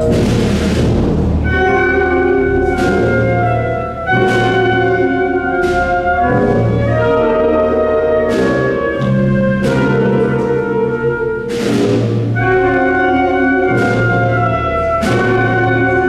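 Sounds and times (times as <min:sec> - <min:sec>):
cymbal crashes: 0:00.0 - 0:10.6
wind band playing a march: 0:00.0 - 0:16.0.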